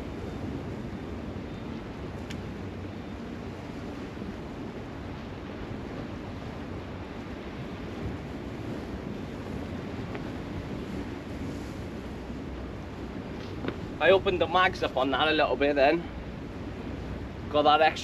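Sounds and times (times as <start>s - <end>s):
waves washing on shore: 0.0s - 18.0s
wind buffeting microphone: 0.0s - 18.0s
faint click: 2.2s - 2.4s.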